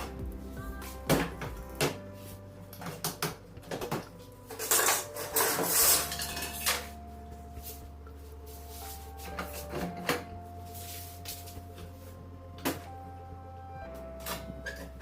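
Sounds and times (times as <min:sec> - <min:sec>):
steady low hum: 0:00.0 - 0:15.0
objects being handled: 0:00.8 - 0:07.0.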